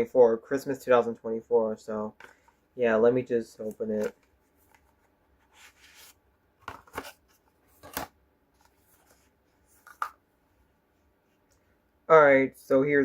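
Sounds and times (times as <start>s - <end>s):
box rustling: 3.8s - 10.1s
box clicks and scrapes: 5.5s - 8.1s.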